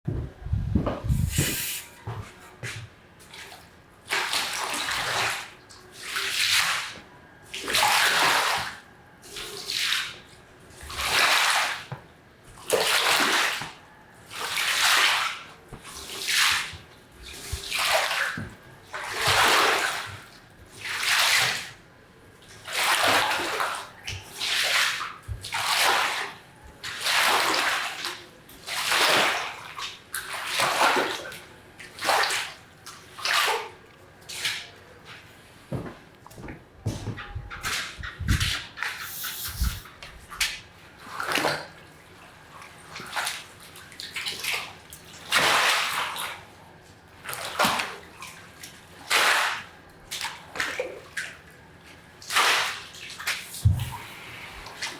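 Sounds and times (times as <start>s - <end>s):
wet swishing on soaked carpet: 37.7s - 40.6s.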